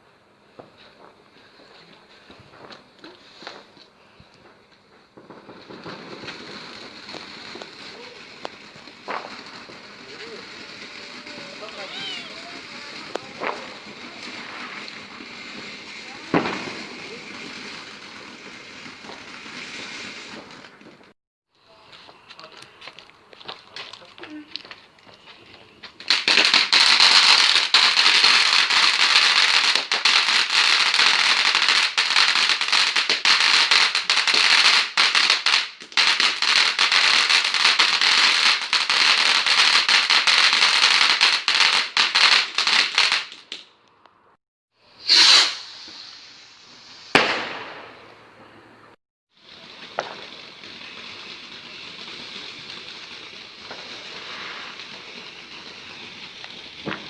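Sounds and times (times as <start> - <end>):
fireworks crackling and fizzing: 0.0 - 57.0
firework bang: 5.2 - 21.2, 45.0 - 49.0, 49.6 - 57.0.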